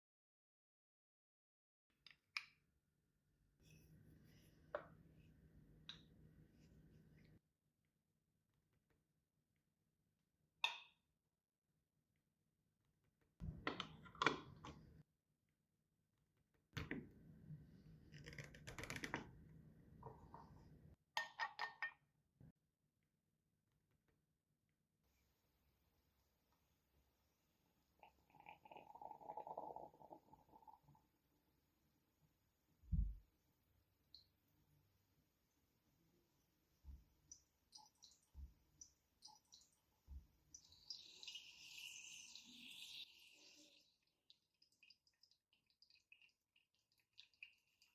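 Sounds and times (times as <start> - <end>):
espresso machine low thumps: 13.4 - 14.8.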